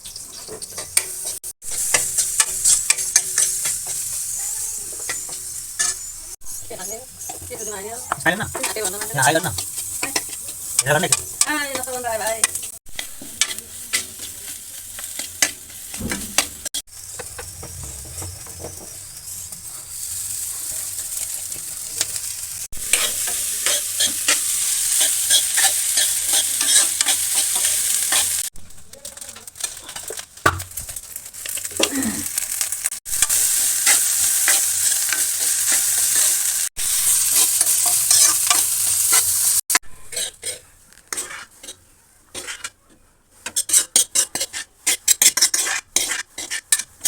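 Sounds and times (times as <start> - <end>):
food sizzling in a pan: 0.0 - 47.0.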